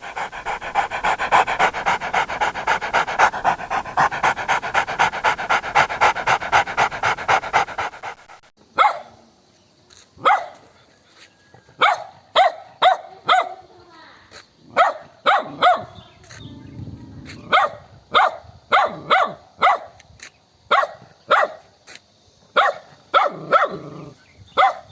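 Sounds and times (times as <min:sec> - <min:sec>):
dog panting: 0:00.0 - 0:08.5
dog barking: 0:08.8 - 0:09.2, 0:10.2 - 0:10.7, 0:11.8 - 0:13.7, 0:14.7 - 0:16.0, 0:17.3 - 0:20.0, 0:20.7 - 0:21.7, 0:22.6 - 0:24.9.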